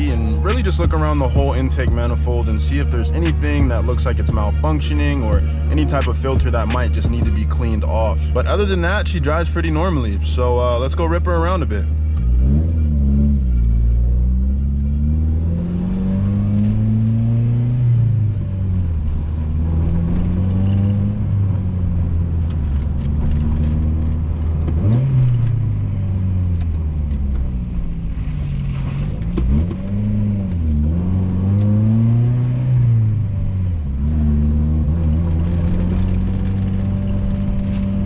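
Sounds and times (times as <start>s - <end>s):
car engine accelerating through gears: 11.9s - 38.0s.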